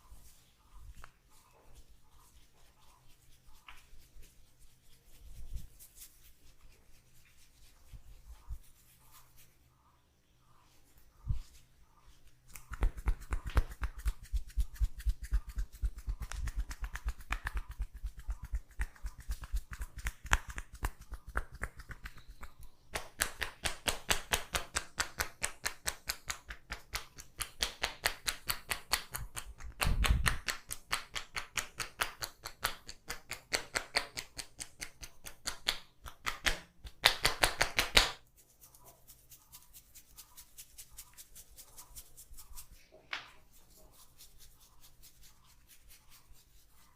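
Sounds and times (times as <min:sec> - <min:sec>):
hands tapping on body: 0:12.5 - 0:38.2.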